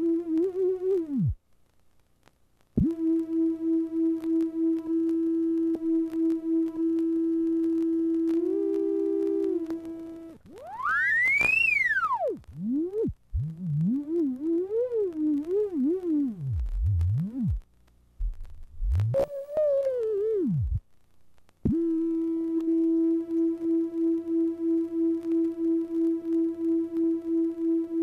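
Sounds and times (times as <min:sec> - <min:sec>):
pulsing mid-pitched test tone: 0:02.8 - 0:17.6, 0:18.3 - 0:20.8
sweeping electronic test tone: 0:02.8 - 0:17.6.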